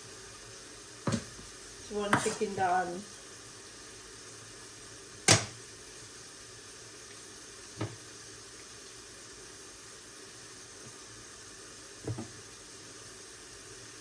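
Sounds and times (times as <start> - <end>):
onions sizzling in pan: 0.0 - 14.0.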